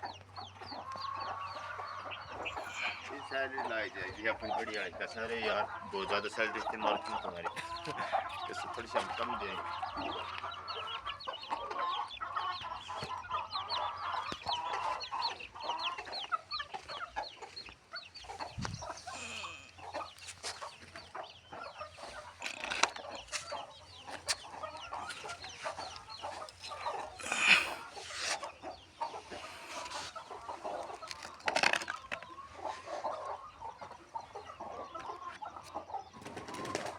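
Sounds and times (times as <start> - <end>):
chickens clucking: 0.0 - 36.9
chicken squawks: 0.8 - 3.8, 23.3 - 31.2.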